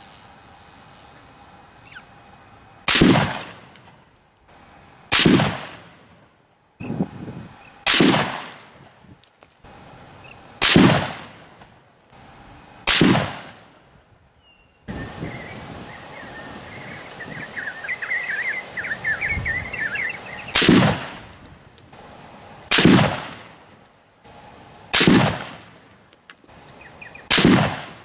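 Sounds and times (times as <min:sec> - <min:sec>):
rifle shots: 0:02.9 - 0:03.9, 0:05.1 - 0:06.1, 0:07.8 - 0:08.9, 0:10.6 - 0:11.7, 0:12.8 - 0:13.8, 0:19.9 - 0:21.4, 0:22.0 - 0:25.9, 0:26.8 - 0:28.0.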